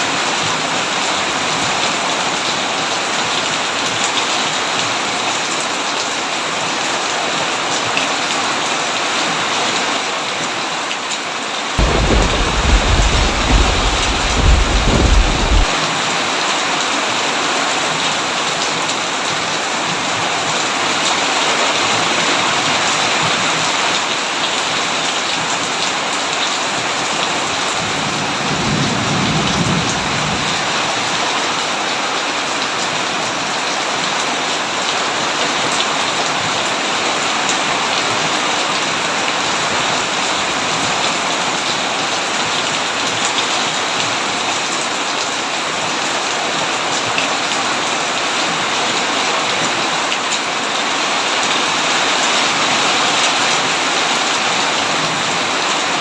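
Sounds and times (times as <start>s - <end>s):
heavy rain falling: 0.0s - 56.0s
loud thunderclap: 11.8s - 15.7s
soft roll of thunder: 11.8s - 15.7s.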